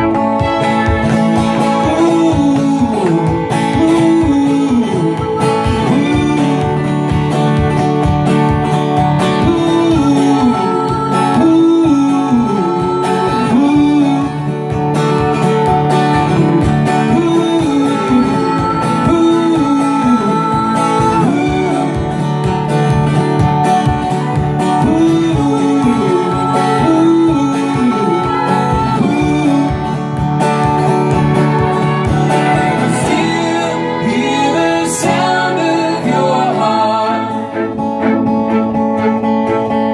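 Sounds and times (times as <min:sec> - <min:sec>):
steady beat: 0:00.0 - 0:12.0, 0:28.2 - 0:33.6, 0:37.5 - 0:39.9
bending melodic lead line: 0:00.0 - 0:39.9
guitars playing: 0:00.0 - 0:39.9.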